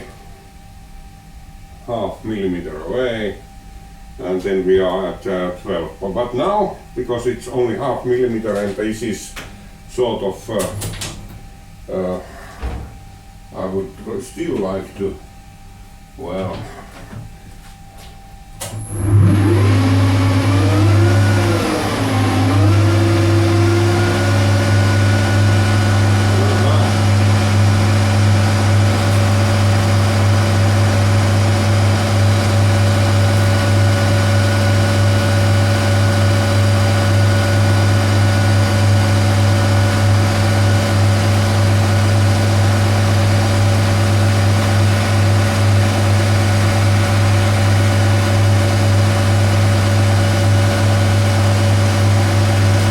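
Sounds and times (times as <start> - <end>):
metal lathe motor running: 18.8 - 52.9.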